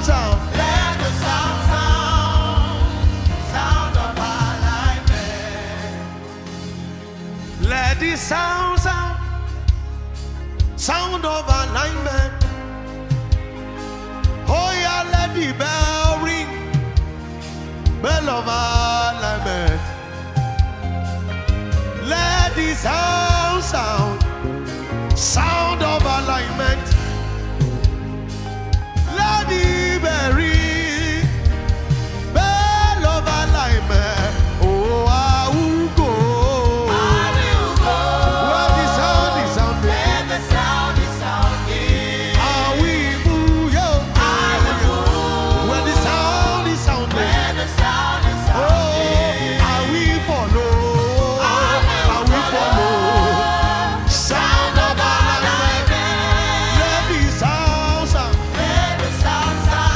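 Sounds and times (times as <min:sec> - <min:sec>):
singers with vocal runs: 0:00.0 - 0:06.8, 0:32.3 - 0:59.9
band playing steady beat: 0:00.0 - 0:59.9.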